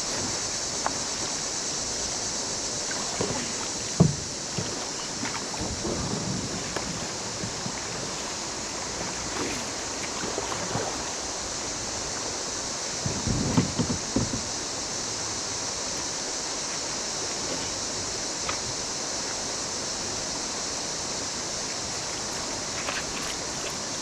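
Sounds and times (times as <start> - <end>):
rushing river water: 0.0 - 24.0
paddle knocks and splashes: 2.8 - 11.4, 13.0 - 14.7, 22.4 - 24.0.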